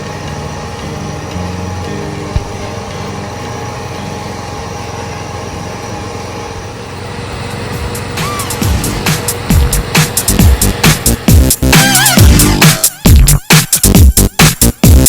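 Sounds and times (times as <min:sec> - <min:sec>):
ride-on lawnmower engine: 0:00.0 - 0:15.0
music with a beat: 0:08.2 - 0:15.0.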